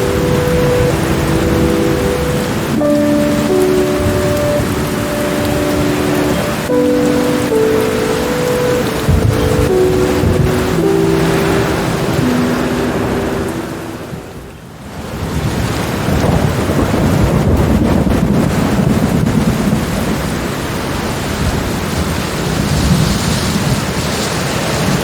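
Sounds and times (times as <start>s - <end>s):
soft held music notes: 0.0s - 14.5s
heavy rain falling: 0.0s - 25.0s
deep rumble of thunder: 15.1s - 25.0s.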